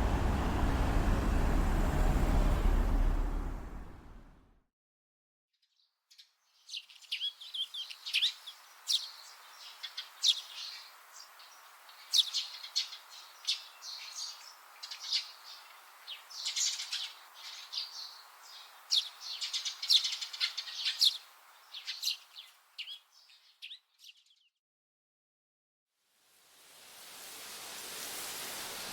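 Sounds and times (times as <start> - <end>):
outdoor background hiss: 0.0 - 4.4, 6.4 - 24.0, 26.0 - 28.9
small birds chirping: 5.6 - 24.6.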